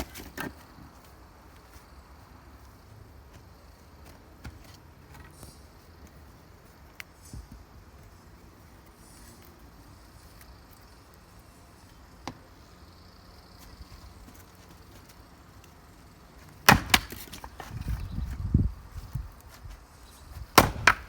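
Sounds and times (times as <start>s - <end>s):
dull thuds of falling wood: 0.0s - 0.6s, 16.6s - 18.4s, 20.4s - 21.0s
axe cracking into log: 16.6s - 17.8s, 20.5s - 21.0s.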